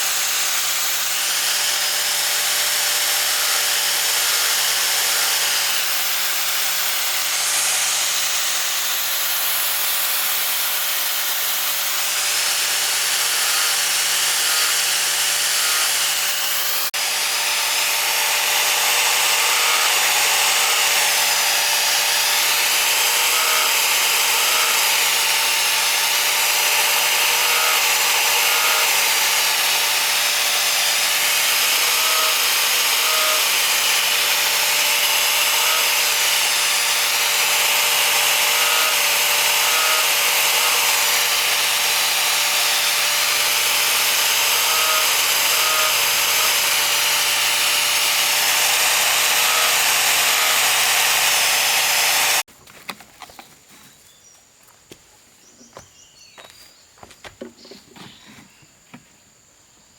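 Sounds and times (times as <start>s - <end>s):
saw cutting log: 0.0s - 52.5s.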